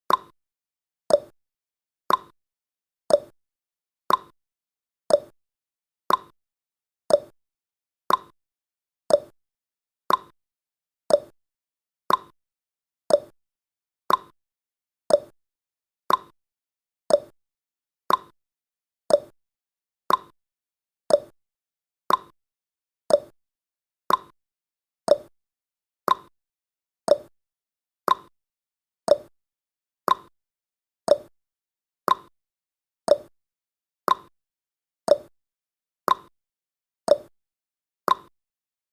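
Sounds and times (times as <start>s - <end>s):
clock ticking: 1.1s - 1.3s, 2.1s - 2.3s, 3.1s - 3.3s, 4.1s - 4.3s, 5.1s - 5.3s, 6.1s - 6.3s, 7.1s - 7.3s, 8.1s - 8.3s, 9.1s - 9.3s, 10.1s - 10.3s, 11.1s - 11.3s, 12.1s - 12.3s, 13.1s - 13.3s, 14.1s - 14.3s, 15.1s - 15.3s, 16.1s - 16.3s, 17.1s - 17.3s, 18.1s - 18.3s, 19.1s - 19.3s, 20.1s - 20.3s, 21.1s - 21.3s, 22.1s - 22.3s, 23.1s - 23.3s, 24.1s - 24.3s, 25.1s - 25.3s, 26.1s - 26.3s, 27.1s - 27.3s, 28.1s - 28.3s, 29.1s - 29.3s, 30.1s - 30.3s, 31.1s - 31.3s, 32.1s - 32.3s, 33.1s - 33.3s, 34.1s - 34.3s, 35.1s - 35.3s, 36.1s - 36.3s, 37.1s - 37.3s, 38.1s - 38.3s.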